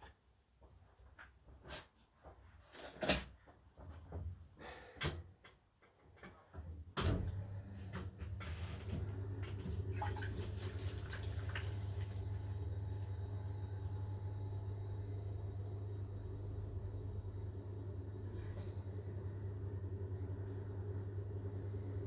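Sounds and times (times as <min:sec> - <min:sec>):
potter's wheel motor hum: 0:08.3 - 0:22.0.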